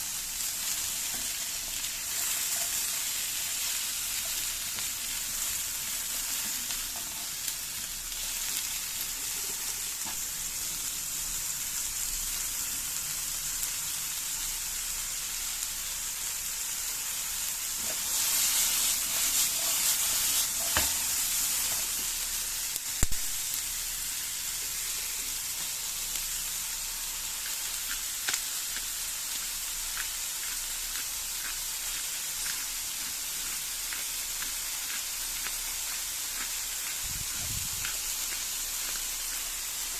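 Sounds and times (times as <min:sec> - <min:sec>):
food sizzling in hot oil: 0:00.0 - 0:39.9.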